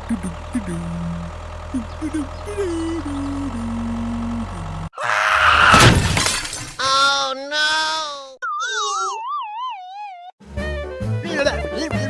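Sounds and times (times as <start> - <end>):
low engine-like rumble: 0.0 - 4.9
loud noisy crash: 5.5 - 6.8.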